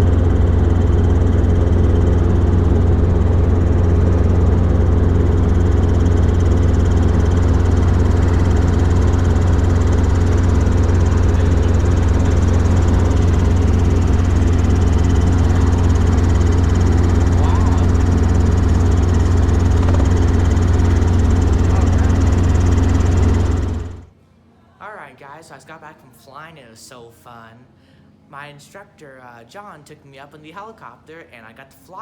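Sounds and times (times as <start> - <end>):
helicopter droning in flight: 0.0 - 24.1.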